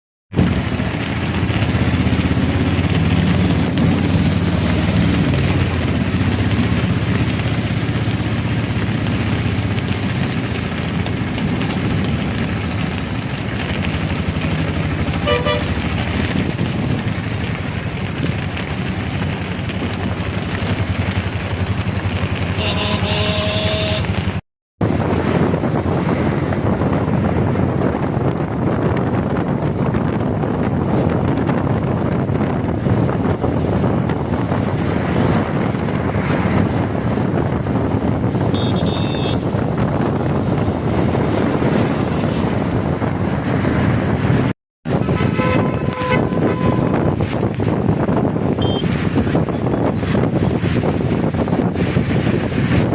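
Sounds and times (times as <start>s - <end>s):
vehicle engines: 0.3s - 52.9s
steady rushing water noise: 0.4s - 27.6s
car horn honking: 15.2s - 15.8s, 22.6s - 24.2s, 38.5s - 39.5s, 44.9s - 47.1s, 48.6s - 48.9s.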